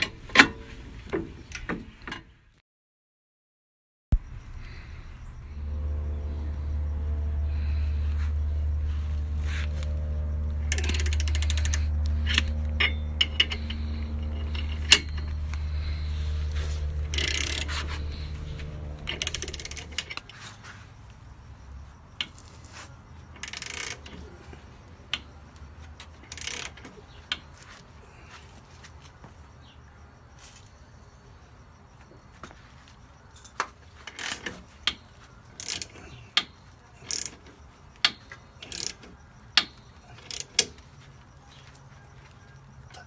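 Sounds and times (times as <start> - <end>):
low hum: 4.1 - 20.4
metal tools clanking: 4.8 - 20.4
ratchet clicks: 9.6 - 20.4, 23.3 - 24.3, 26.1 - 27.5, 34.0 - 40.8.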